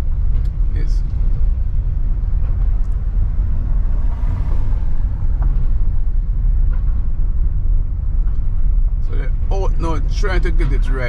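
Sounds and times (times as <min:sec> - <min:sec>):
car driving on rough road: 0:00.0 - 0:11.0
tyres and engine rumbling: 0:00.0 - 0:11.0.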